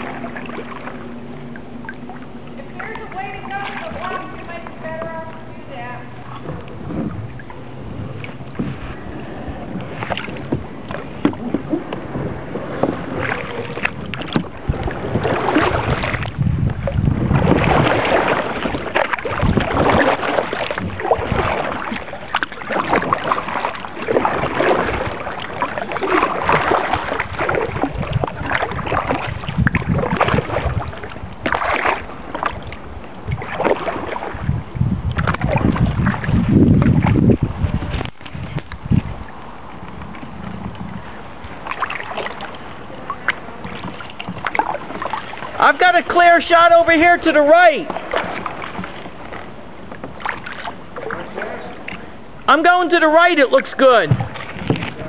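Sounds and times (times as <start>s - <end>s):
kayak paddle splashing: 0.0s - 55.0s.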